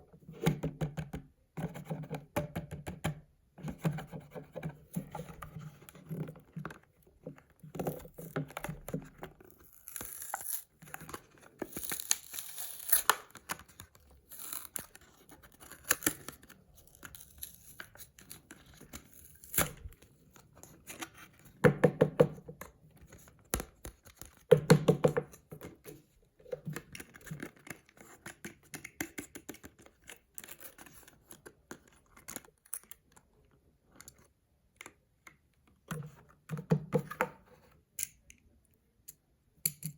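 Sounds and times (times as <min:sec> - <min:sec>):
packaging tearing and crinkling: 0:09.6 - 0:17.8.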